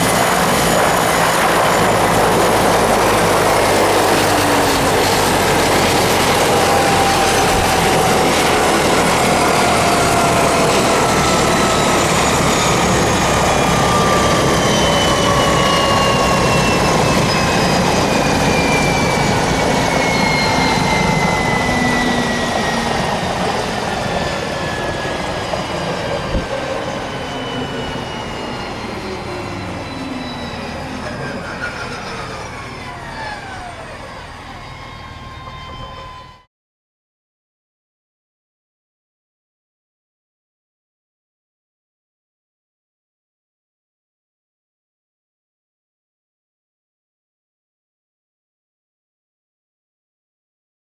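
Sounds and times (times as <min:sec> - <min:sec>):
helicopter turbines winding down: 0:00.0 - 0:36.5.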